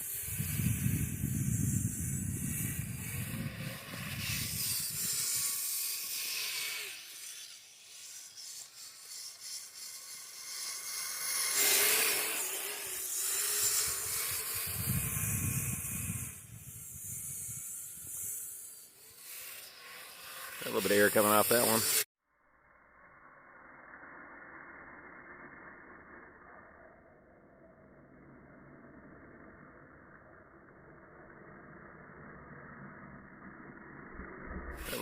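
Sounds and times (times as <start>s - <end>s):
electric motor whining: 0.0s - 22.1s, 34.2s - 35.0s
low rumble: 23.0s - 35.0s.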